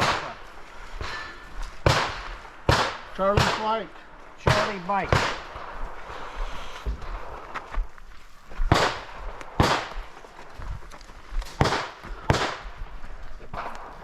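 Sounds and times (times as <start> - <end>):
gunshots with echo: 0.0 - 0.4, 1.8 - 3.8, 4.4 - 5.8, 8.7 - 10.0, 11.6 - 12.8.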